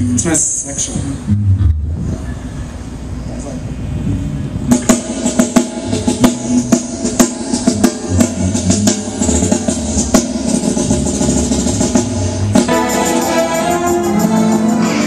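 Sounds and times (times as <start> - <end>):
low bass line: 1.0 - 5.0
drum kit playing a beat: 4.6 - 15.0.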